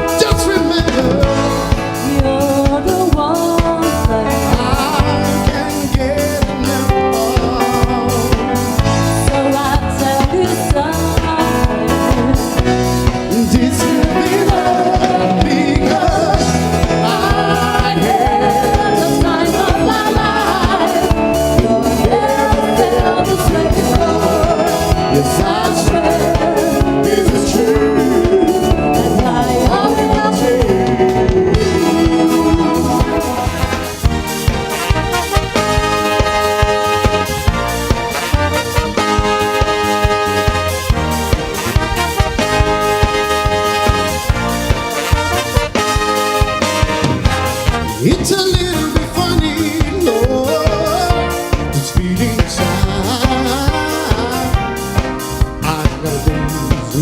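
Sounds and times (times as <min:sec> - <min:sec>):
pop music with drum beat: 0:00.0 - 0:57.0.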